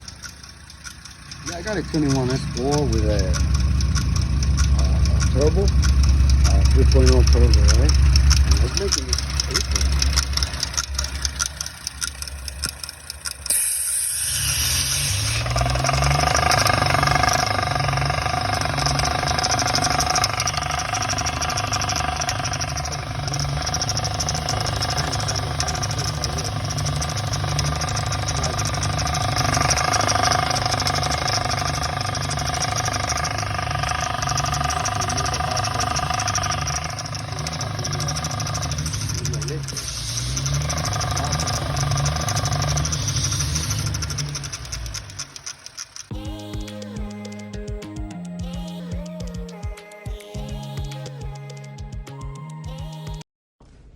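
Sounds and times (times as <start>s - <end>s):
car engine running with rattle: 0.0s - 47.8s
brief hiss: 13.5s - 15.5s.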